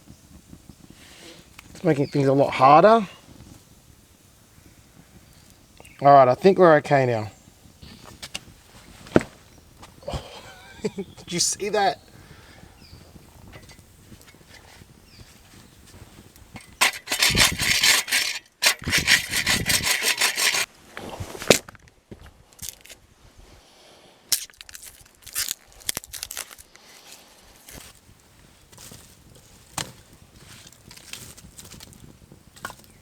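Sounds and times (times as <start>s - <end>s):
hand saw cutting wood: 16.6s - 20.7s
wood snapping and knocking: 24.3s - 26.7s, 29.6s - 30.0s.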